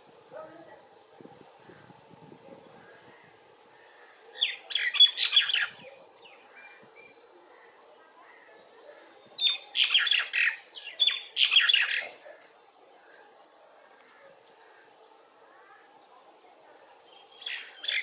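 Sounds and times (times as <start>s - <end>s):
birds giving harsh calls: 2.8s - 6.8s, 9.4s - 12.2s.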